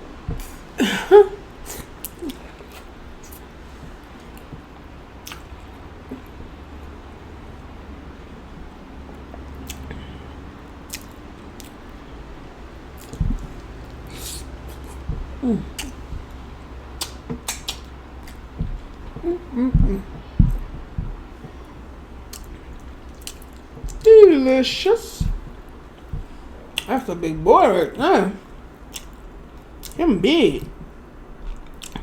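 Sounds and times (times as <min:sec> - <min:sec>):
low steady hum: 0:00.0 - 0:32.0
wet chewing mouth sounds: 0:01.5 - 0:07.0, 0:09.1 - 0:24.1, 0:25.2 - 0:26.9, 0:28.4 - 0:30.0, 0:30.7 - 0:32.0
person humming mm: 0:14.1 - 0:16.2, 0:18.6 - 0:20.7.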